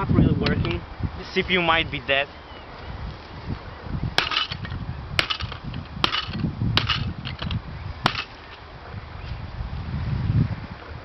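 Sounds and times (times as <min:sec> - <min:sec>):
sharp hard knocks: 0:04.2 - 0:08.4.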